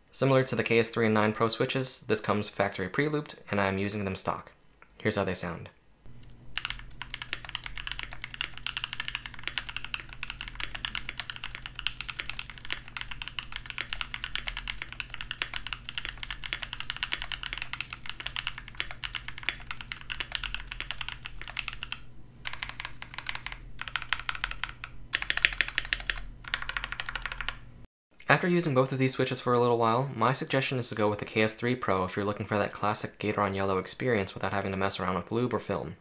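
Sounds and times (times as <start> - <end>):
mechanical keyboard typing: 6.5 - 27.7.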